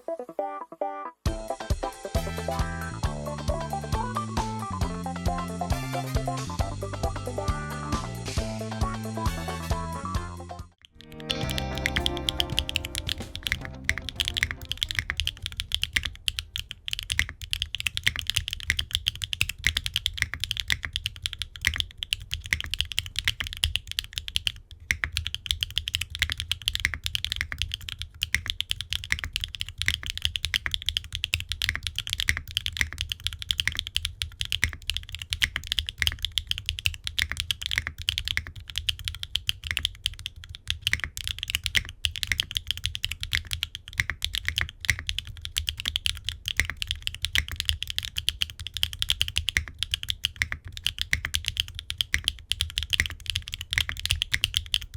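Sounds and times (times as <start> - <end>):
fast mechanical keyboard typing: 10.8 - 54.9.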